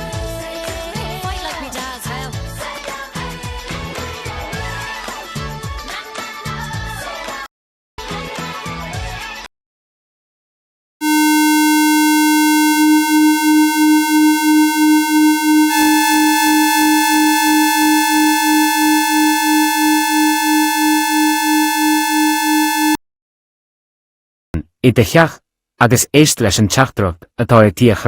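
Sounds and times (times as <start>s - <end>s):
buzzy electronic alert tone: 11.0s - 23.0s
higher electronic tone: 11.0s - 23.0s.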